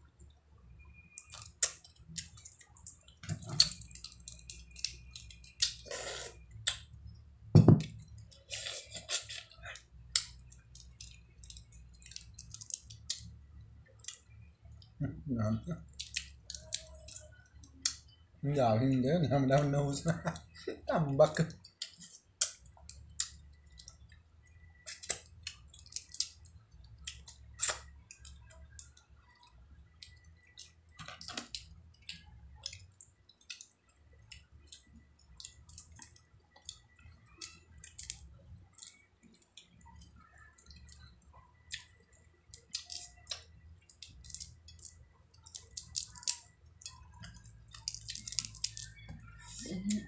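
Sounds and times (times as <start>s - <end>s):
crab shell cracking: 42.5s - 49.0s.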